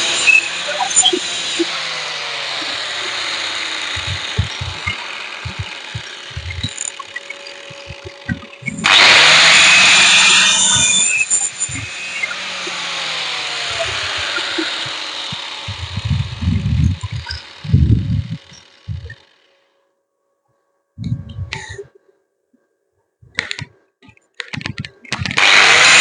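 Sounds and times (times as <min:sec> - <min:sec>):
electric power tool running: 0:00.0 - 0:19.5, 0:25.2 - 0:26.0.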